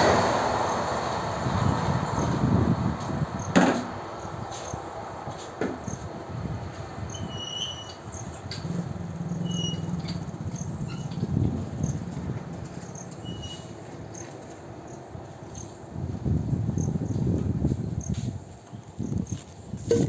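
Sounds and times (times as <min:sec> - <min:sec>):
electric train rumble: 0:00.0 - 0:19.3.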